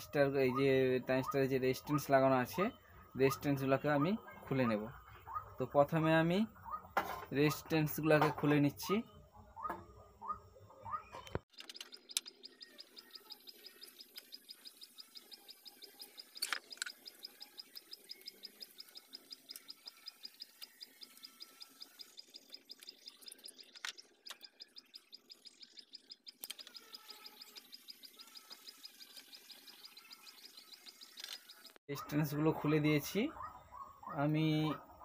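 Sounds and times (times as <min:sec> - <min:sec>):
rapid high-pitched chirping: 0:00.0 - 0:08.0, 0:08.8 - 0:35.0.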